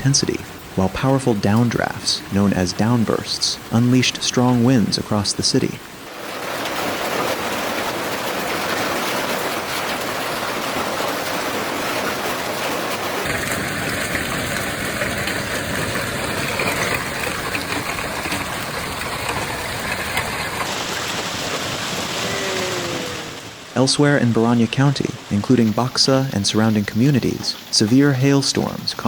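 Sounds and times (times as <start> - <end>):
hail and heavy rain: 0.0 - 29.0
sharp hail impacts: 5.6 - 23.7.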